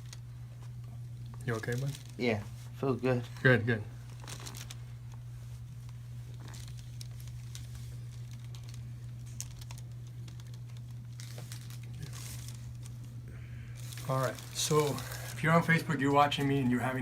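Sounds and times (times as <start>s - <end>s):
steady low hum: 0.0s - 17.0s
hands rustling massaging skin: 4.1s - 13.2s.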